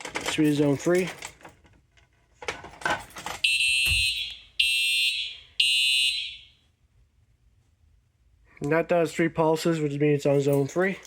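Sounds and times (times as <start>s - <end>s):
clicks and knocks: 0.0s - 4.2s
fire alarm horn pulses: 3.4s - 6.6s.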